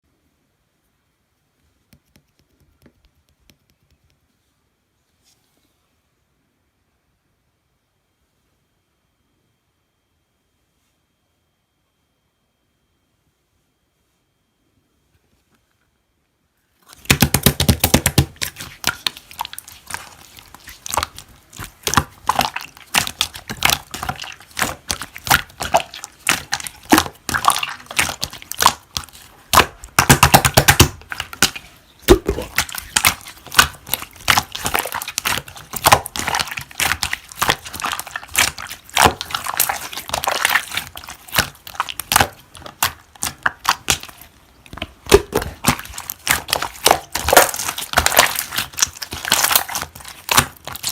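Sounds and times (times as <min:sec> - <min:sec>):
slime squished by hand: 0:16.9 - 0:50.9.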